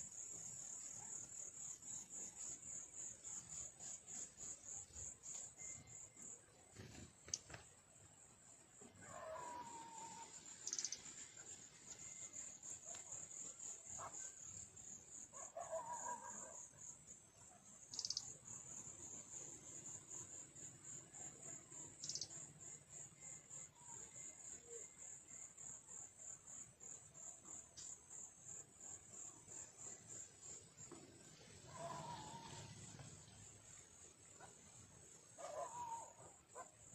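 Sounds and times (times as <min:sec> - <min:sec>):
high-pitched insect trill: 0:09.1 - 0:17.2, 0:17.8 - 0:34.4
bird calls and chirps: 0:09.2 - 0:12.2, 0:17.9 - 0:18.4, 0:21.8 - 0:22.4.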